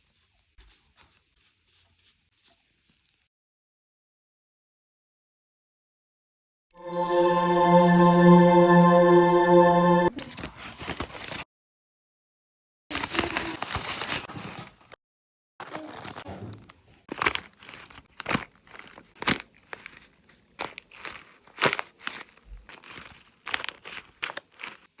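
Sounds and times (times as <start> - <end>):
soft paper rustling: 0.0 - 3.3, 17.1 - 24.9
paper crinkling: 17.1 - 25.0
sharp paper crackles: 17.1 - 25.0.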